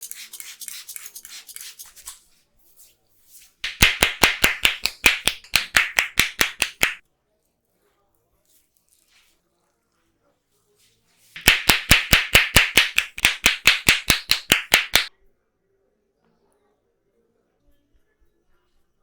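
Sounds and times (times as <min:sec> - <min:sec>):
hands patting and clapping on head: 0:03.6 - 0:07.0, 0:11.4 - 0:15.1.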